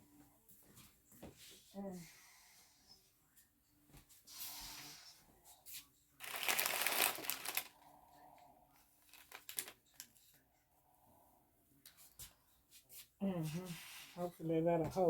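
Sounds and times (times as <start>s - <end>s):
crinkling rustling handling noise: 6.2s - 7.8s, 9.0s - 10.2s.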